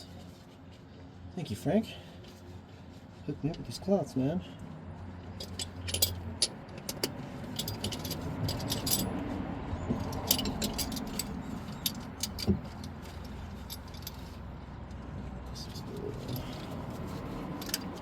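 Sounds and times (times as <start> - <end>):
rustling and scraping: 0.0 - 4.0, 4.6 - 14.7, 15.5 - 18.0
small metal parts clinking: 5.4 - 9.2, 10.0 - 14.5, 15.6 - 18.0.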